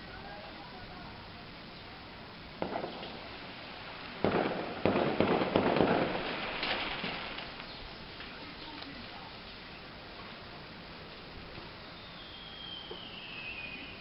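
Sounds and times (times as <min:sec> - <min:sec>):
firework crackling: 0:00.0 - 0:14.0
firework bangs: 0:02.5 - 0:08.4, 0:12.0 - 0:14.0.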